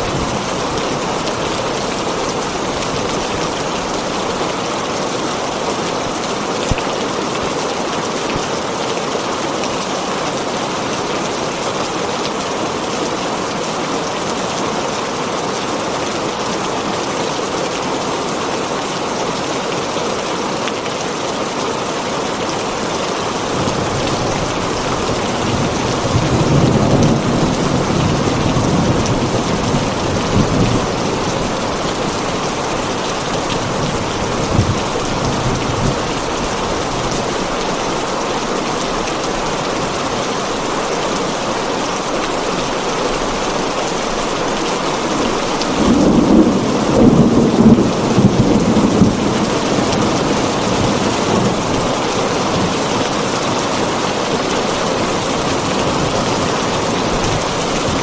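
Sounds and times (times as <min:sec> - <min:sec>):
heavy rain on a tin roof: 0:00.0 - 0:58.0
thunder rumbling: 0:45.0 - 0:52.9.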